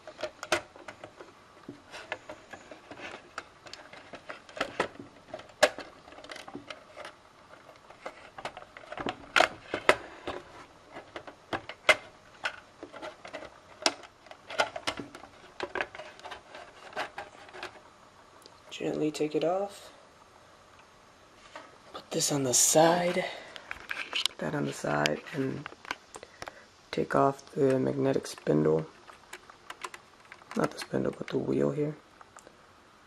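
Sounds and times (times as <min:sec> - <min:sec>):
plastic and metal parts clicking: 0:00.0 - 0:17.8, 0:27.6 - 0:31.4.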